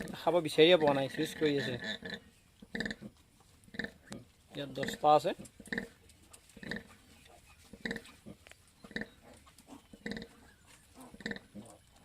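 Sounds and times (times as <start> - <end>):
pigs grunting: 0.8 - 3.1, 3.7 - 6.0, 7.7 - 12.0.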